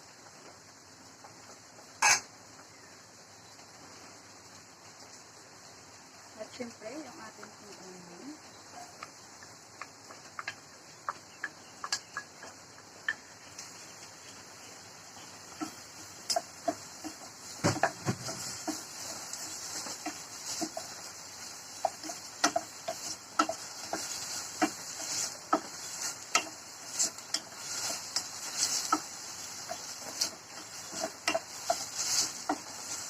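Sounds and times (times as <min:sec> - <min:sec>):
onion sizzling in a pan: 0:00.0 - 0:33.0
utensil stirring in a pan: 0:08.6 - 0:33.0.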